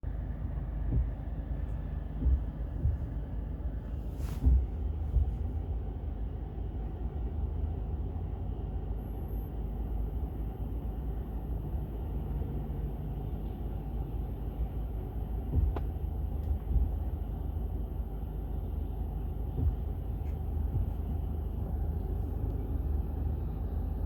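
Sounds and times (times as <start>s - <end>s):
car engine low rumble: 0.0s - 24.0s
engine knocking: 0.1s - 5.9s, 19.2s - 23.2s.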